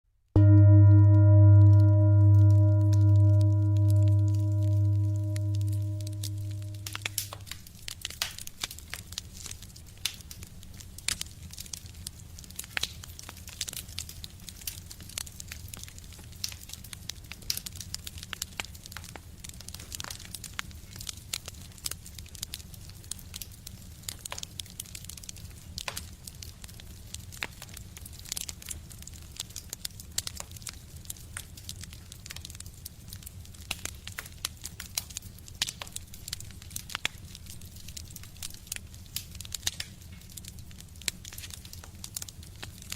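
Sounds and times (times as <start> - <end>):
low steady rumble: 0.4 - 7.2
fire crackling and popping: 5.4 - 42.9.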